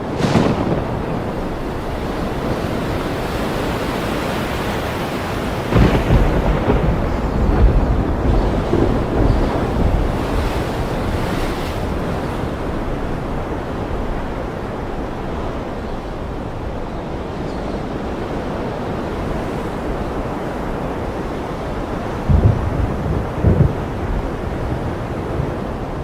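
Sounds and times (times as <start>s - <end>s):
low rumble of thunder: 0.0s - 3.8s, 5.5s - 13.4s, 22.2s - 26.0s
ocean surf breaking: 0.0s - 26.0s
wind: 0.0s - 26.0s.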